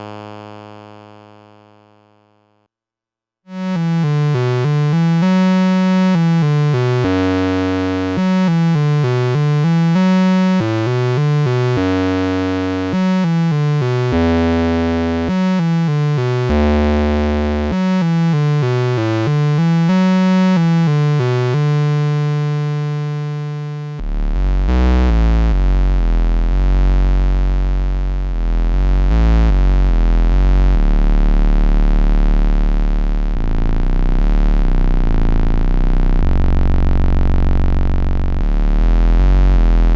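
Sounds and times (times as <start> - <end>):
synthesizer melody line: 3.5 - 24.0
deep synthesizer bass drone: 3.5 - 39.9.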